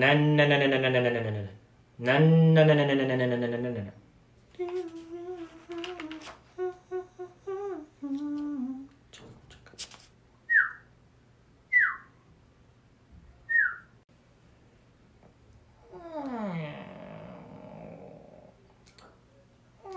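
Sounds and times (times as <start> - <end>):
person humming a tune: 2.0 - 9.0
whistle-like vocal notes: 10.5 - 10.9, 11.7 - 12.1, 13.5 - 13.9.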